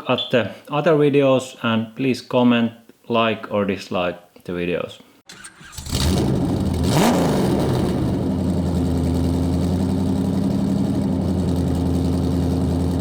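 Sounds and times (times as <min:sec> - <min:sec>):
vehicle engine revving and idling: 0:05.3 - 0:13.0.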